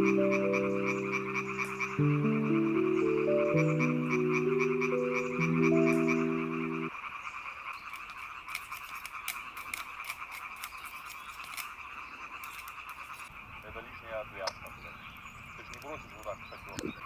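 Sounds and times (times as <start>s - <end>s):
held music notes: 0.0s - 6.9s
frogs croaking: 0.0s - 9.3s, 10.0s - 17.0s.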